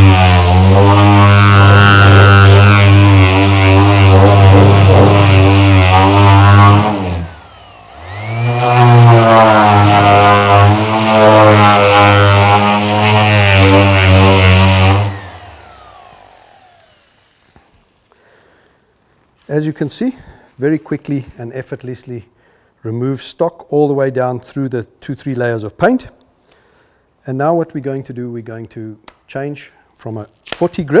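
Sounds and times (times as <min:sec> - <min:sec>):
orbital sander sanding wood: 0:00.0 - 0:18.0.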